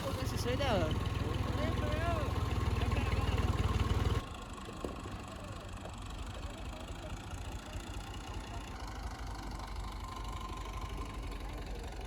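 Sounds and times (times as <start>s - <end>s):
engine idling: 0.0s - 4.2s.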